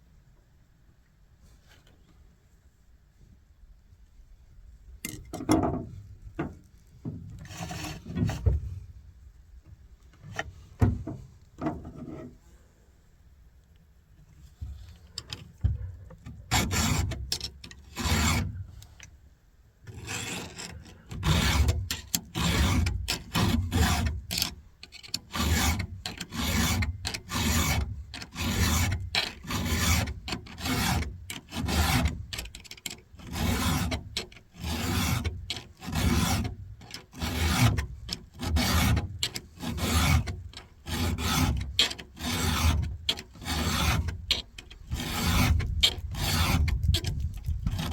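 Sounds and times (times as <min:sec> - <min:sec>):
file rasping on chainsaw chain: 0:07.4 - 0:08.4, 0:16.4 - 0:19.0, 0:19.9 - 0:47.9.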